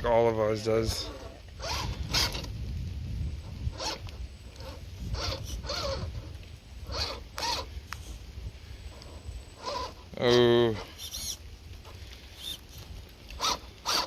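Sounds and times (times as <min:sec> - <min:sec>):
toy car electric motor whining: 0:00.9 - 0:02.6, 0:03.7 - 0:08.2, 0:08.9 - 0:11.4, 0:12.2 - 0:14.0.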